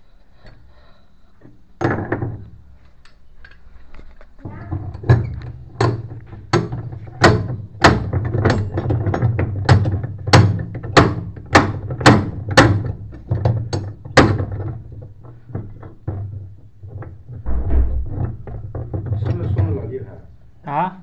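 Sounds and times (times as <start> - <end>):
hammer blows: 17.5 - 18.7.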